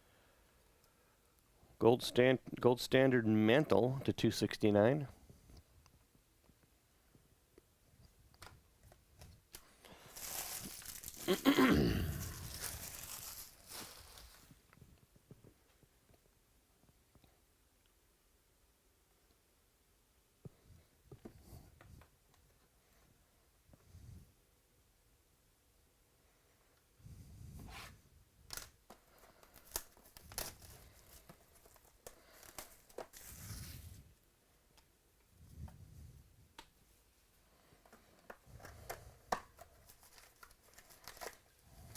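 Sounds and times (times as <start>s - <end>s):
card pack wrapper tearing: 10.1s - 14.4s, 28.5s - 33.8s, 38.8s - 41.6s.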